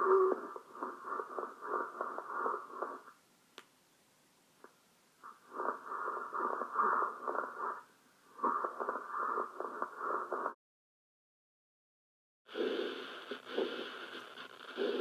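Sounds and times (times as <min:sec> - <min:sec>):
crackly breath through stethoscope: 0:00.0 - 0:03.1, 0:05.2 - 0:10.6, 0:12.5 - 0:15.0.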